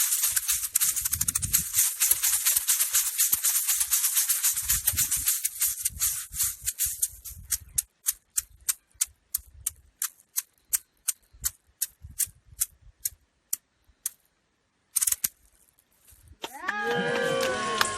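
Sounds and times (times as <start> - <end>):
maracas shaken: 0.0 - 8.9.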